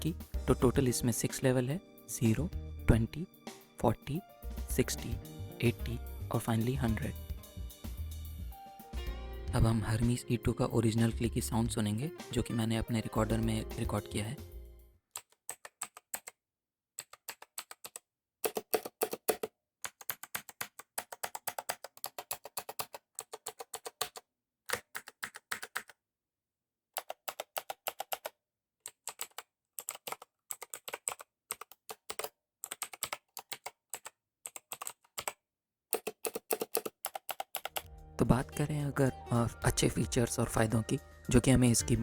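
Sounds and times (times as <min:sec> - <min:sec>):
clicky mechanical keyboard typing: 0:17.0 - 0:26.0, 0:27.0 - 0:37.9.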